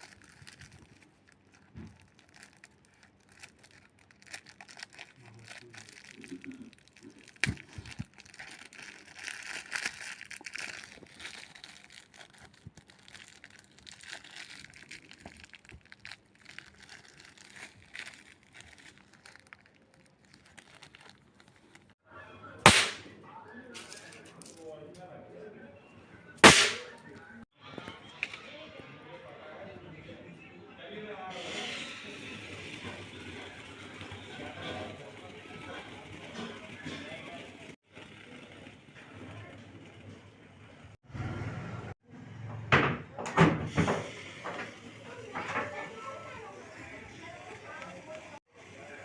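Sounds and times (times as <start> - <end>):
plastic packaging crinkling: 0.0 - 22.0
sharp snap: 22.7 - 23.1, 26.4 - 26.9.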